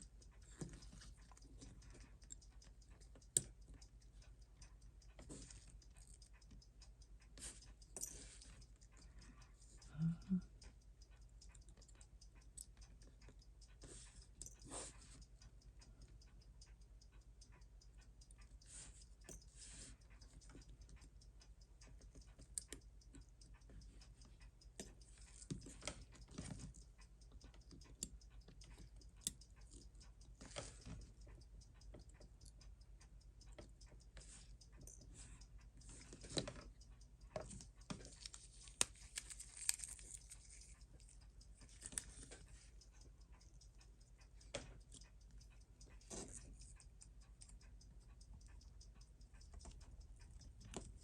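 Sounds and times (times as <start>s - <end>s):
metal tools clicking and scraping: 37.4s - 42.4s.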